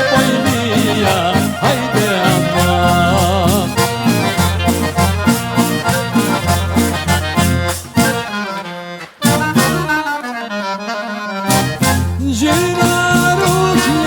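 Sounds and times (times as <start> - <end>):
steady beat: 0.0 - 8.4, 9.2 - 10.1, 11.5 - 14.0
bass line: 0.0 - 8.6, 9.2 - 10.1, 11.4 - 14.0
accordion melody: 0.0 - 14.0.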